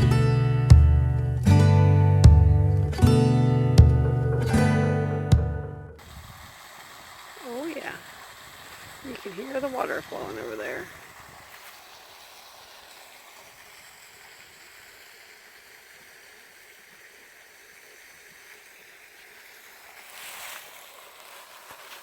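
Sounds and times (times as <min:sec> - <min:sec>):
rustle: 0:06.0 - 0:22.0
stream water flowing: 0:06.0 - 0:22.0.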